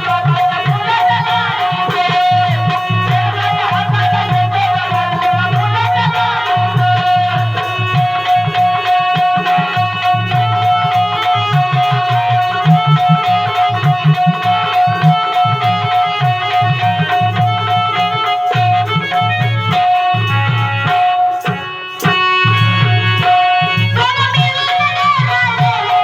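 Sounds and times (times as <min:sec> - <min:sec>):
drum beating a rhythm: 0:00.0 - 0:26.0.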